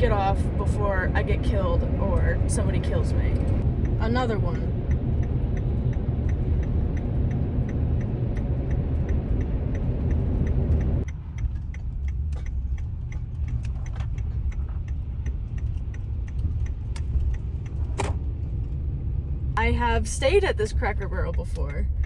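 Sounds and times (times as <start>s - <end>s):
turn signal clicking: 0.0s - 22.0s
van driving rumble: 0.0s - 22.0s.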